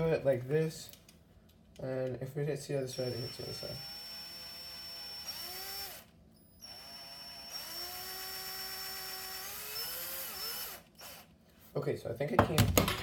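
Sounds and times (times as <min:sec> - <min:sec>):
power drill motor whining: 0:02.9 - 0:11.3.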